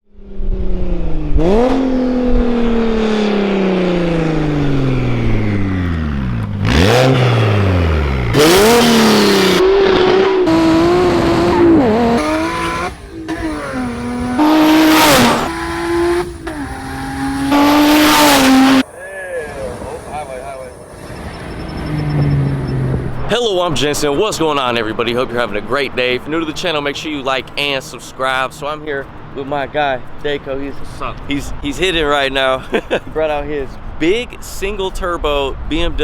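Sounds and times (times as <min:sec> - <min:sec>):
car engine running hard: 0:00.6 - 0:19.0, 0:19.7 - 0:24.1
loud rushes of noise: 0:02.2 - 0:24.2.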